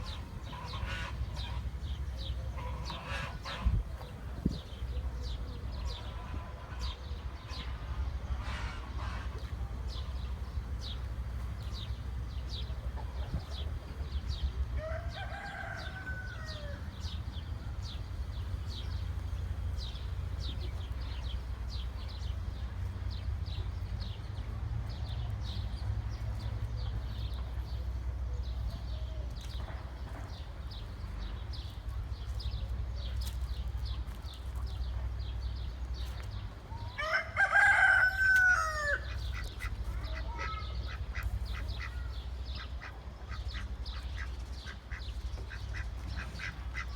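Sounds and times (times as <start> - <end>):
steady low rumble: 0.0 - 37.0
rooster crowing: 14.8 - 16.8, 37.0 - 39.0.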